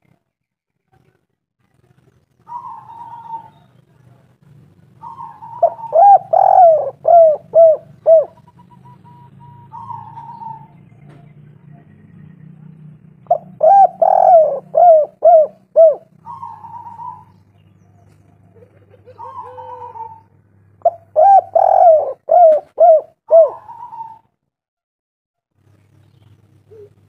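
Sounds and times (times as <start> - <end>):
dove cooing: 2.5 - 3.7, 5.0 - 10.8, 13.2 - 17.4, 18.3 - 24.3, 26.7 - 27.0.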